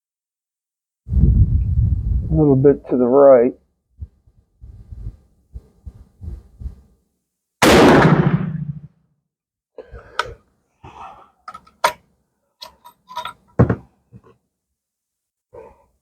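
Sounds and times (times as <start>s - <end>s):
rifle shot: 7.6s - 8.9s
rifle handling clicks and knocks: 11.5s - 14.3s.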